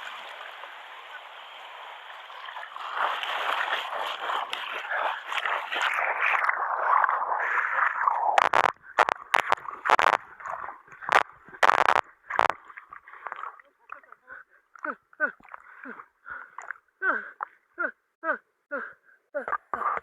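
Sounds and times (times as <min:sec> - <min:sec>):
stream water rushing and gurgling: 0:00.0 - 0:07.8
knocks and splashes in water: 0:00.0 - 0:14.2.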